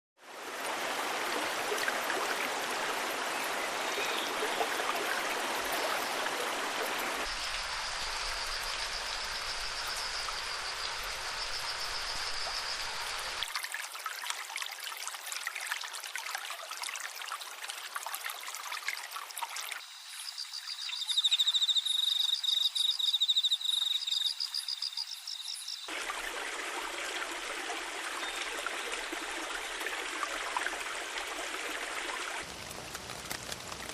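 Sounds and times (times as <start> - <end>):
running water rushing: 0.2 - 19.9, 25.9 - 33.9.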